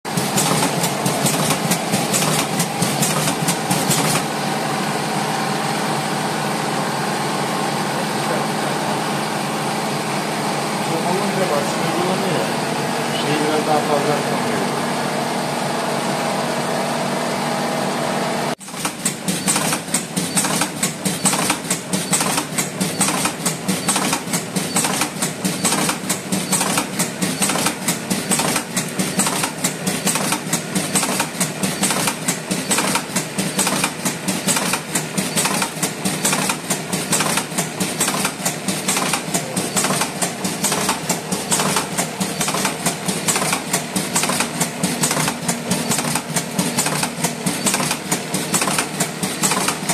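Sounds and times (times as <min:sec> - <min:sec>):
rolling machine clattering: 0:00.1 - 0:04.4, 0:18.7 - 0:49.9.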